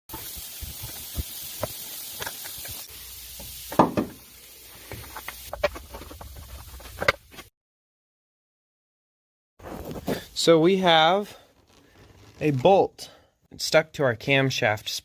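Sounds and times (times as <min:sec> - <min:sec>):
steady hiss: 0:00.1 - 0:05.6.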